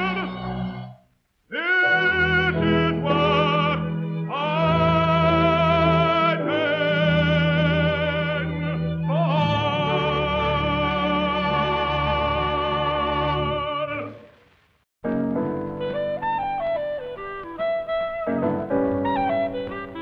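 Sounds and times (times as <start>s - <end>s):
person singing with vibrato: 0.0s - 14.3s.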